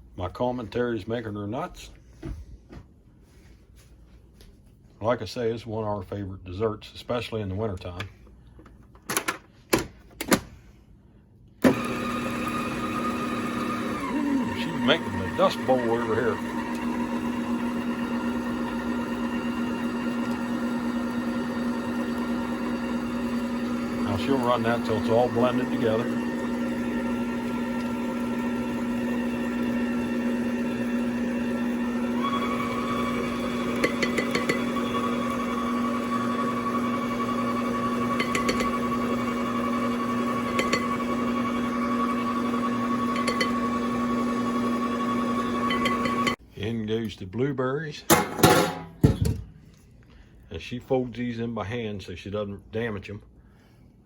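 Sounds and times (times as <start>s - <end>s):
electric kitchen mixer running: 11.6s - 46.4s.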